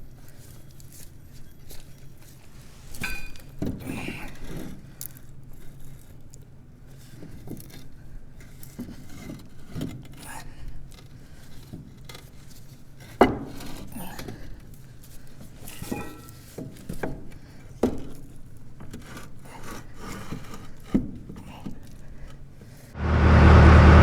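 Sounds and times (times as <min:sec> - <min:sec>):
metal tools clinking and scraping: 0:02.9 - 0:03.6, 0:15.6 - 0:16.5.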